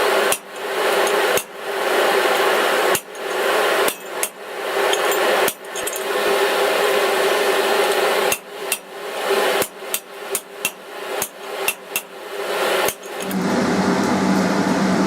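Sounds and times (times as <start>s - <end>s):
hammer striking steel on anvil: 0.3s - 1.6s, 2.4s - 6.1s, 8.3s - 8.9s, 9.6s - 12.1s.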